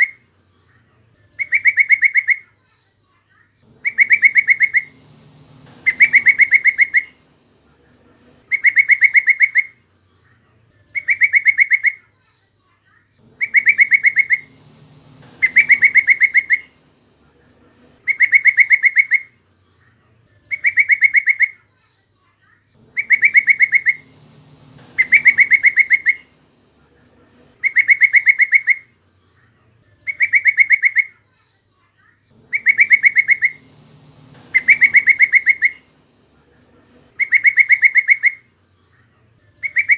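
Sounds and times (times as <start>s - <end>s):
bulbul call: 3.7s - 7.5s, 13.3s - 17.1s, 22.8s - 26.6s, 27.3s - 28.9s, 32.4s - 36.2s, 36.8s - 38.5s.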